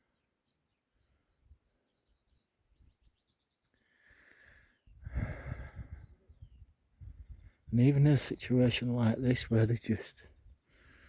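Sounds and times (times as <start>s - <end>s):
faint bird song: 0.0s - 11.0s
breath on microphone: 4.0s - 6.1s.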